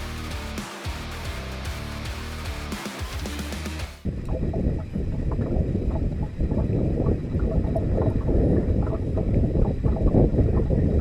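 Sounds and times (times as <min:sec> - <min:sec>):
wind buffeting microphone: 0:04.0 - 0:11.0.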